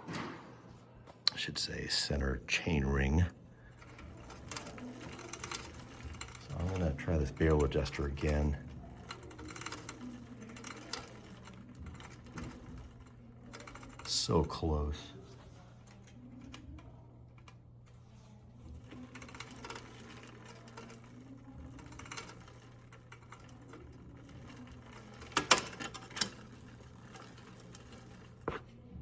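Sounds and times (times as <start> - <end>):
bicycle chain whirring: 2.8 - 29.0
gear shift clicks and clatter: 23.3 - 28.7.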